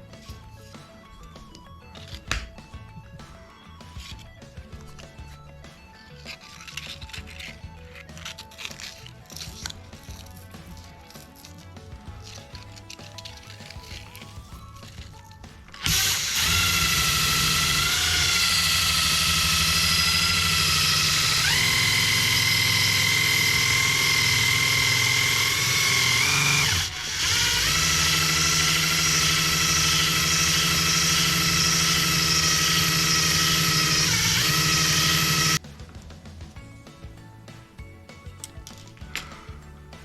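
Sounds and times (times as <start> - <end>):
power tool motor whining: 13.2 - 35.6.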